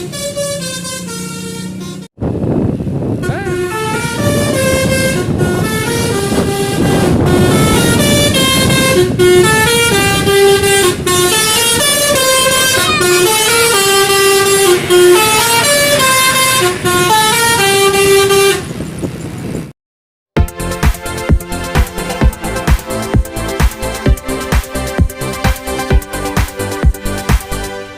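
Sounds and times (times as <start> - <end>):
bus horn playing a melody: 0.0 - 2.1, 3.1 - 18.7, 21.0 - 27.9.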